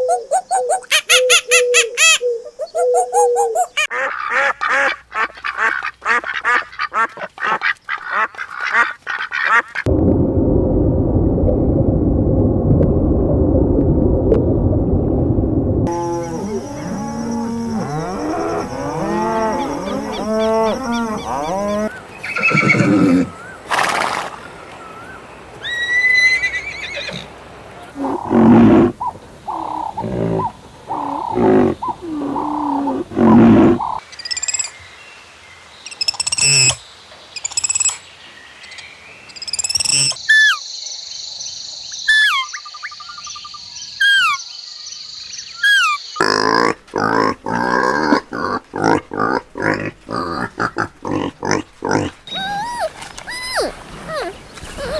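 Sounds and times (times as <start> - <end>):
animal calls: 0.0 - 9.6, 15.9 - 24.3, 24.9 - 34.0, 45.6 - 54.9.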